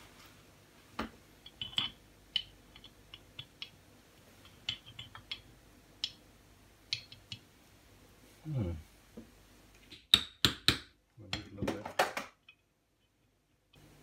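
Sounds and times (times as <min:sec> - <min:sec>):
metallic clicks and taps: 0:04.4 - 0:06.2, 0:06.9 - 0:07.5.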